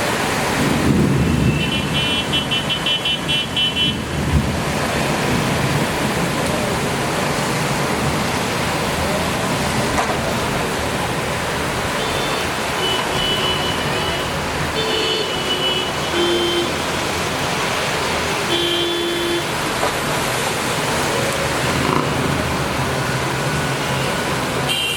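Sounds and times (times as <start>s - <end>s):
heavy rain hissing: 0.0s - 24.7s
traffic passing: 0.0s - 24.9s
car horn toots: 12.0s - 16.8s, 18.5s - 19.5s.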